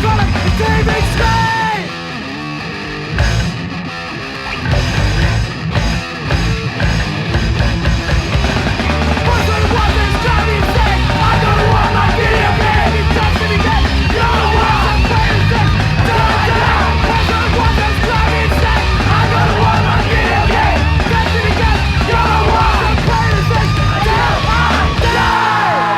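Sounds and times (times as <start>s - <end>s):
person yelling vocals: 0.0s - 1.9s, 9.2s - 25.9s
rock band playing thrashcore: 0.0s - 25.9s.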